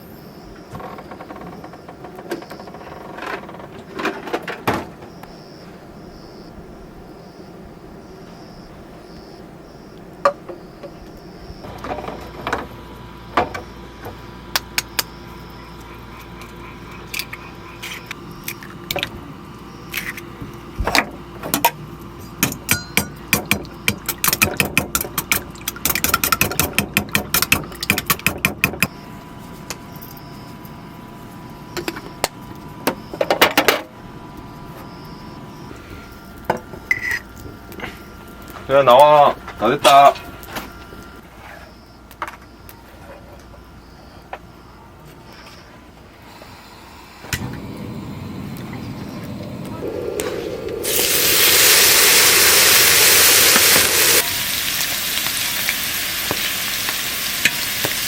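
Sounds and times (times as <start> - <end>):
utensils knocking against cookware: 22.4 - 28.9
steady hum: 28.7 - 41.4, 45.9 - 55.1.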